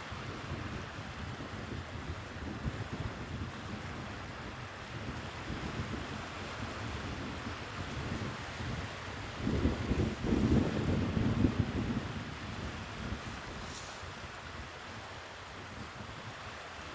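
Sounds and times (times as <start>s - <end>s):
wind buffeting the microphone: 0.1s - 16.9s
sea waves washing on shore: 9.0s - 16.9s.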